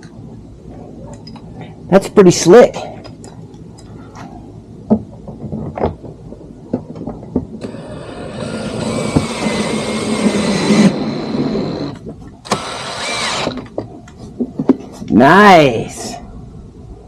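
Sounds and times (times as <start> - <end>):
small electric motor whirring: 7.6 - 13.7.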